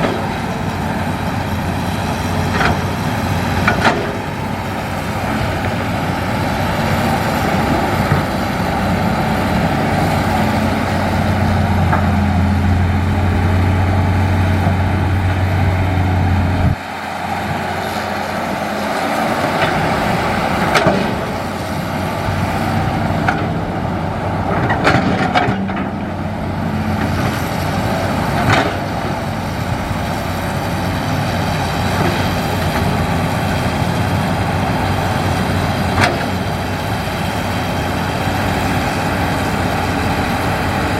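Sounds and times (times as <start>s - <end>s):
excavator diesel engine hum: 0.0s - 40.9s
sharp knocks and clanks: 2.4s - 4.7s, 24.5s - 26.1s.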